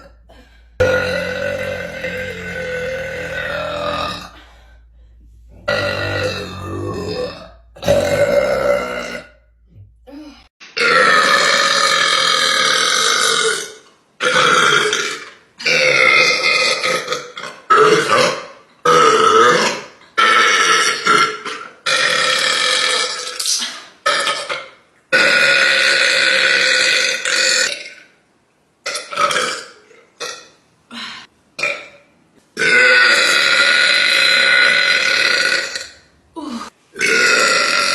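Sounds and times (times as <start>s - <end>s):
girls burping: 0.0s - 10.5s.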